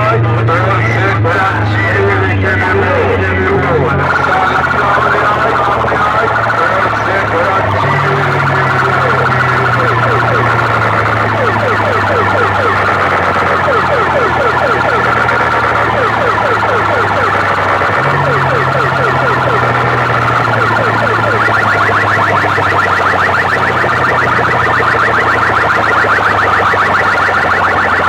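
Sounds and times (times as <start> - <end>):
siren sound effect: 0.0 - 28.0.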